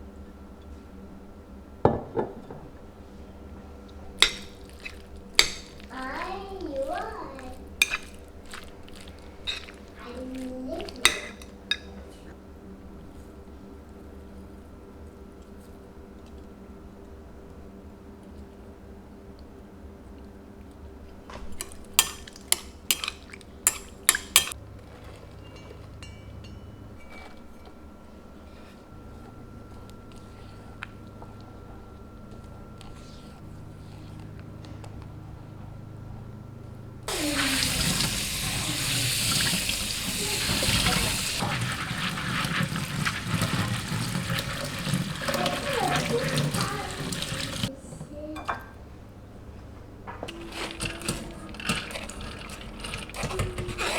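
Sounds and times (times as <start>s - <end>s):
utensils clinking against dishes: 4.2s - 6.3s, 6.9s - 12.2s, 21.4s - 31.4s, 37.1s - 47.7s, 50.2s - 53.9s
kitchen faucet water splashing: 37.1s - 47.7s.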